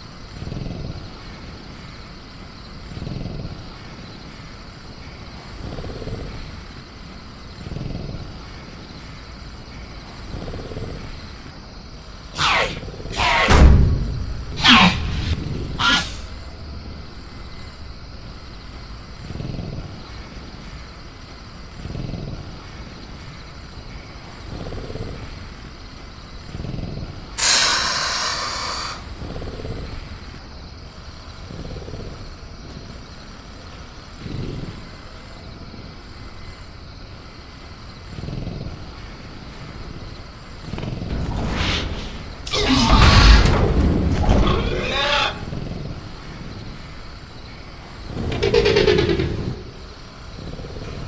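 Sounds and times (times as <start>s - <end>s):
faint cricket tones: 0.0s - 51.0s
loud hiss: 12.1s - 18.8s, 27.3s - 30.4s
low rumble: 13.5s - 20.3s.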